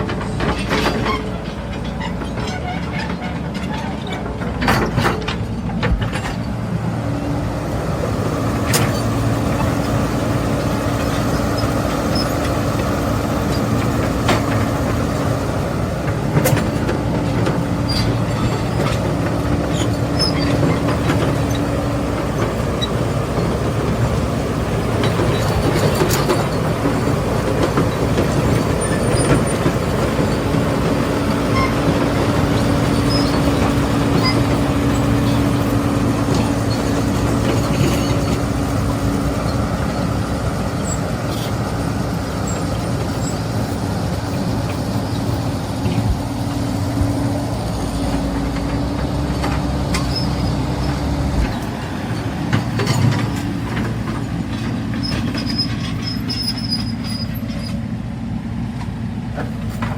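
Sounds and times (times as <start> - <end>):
metallic clanks and squeaks: 0.0 - 6.6, 8.6 - 15.2, 16.1 - 47.2, 47.8 - 57.9
excavator diesel drone: 0.0 - 59.9.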